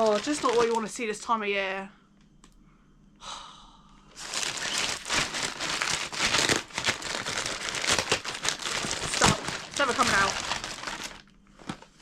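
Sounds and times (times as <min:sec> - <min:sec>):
plastic packaging crinkling: 0:00.0 - 0:01.2, 0:04.2 - 0:12.0
person sighing: 0:03.2 - 0:04.0.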